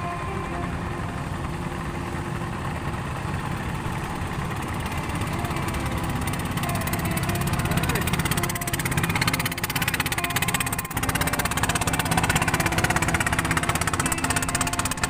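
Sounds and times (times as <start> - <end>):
small engine running: 0.0 - 15.0.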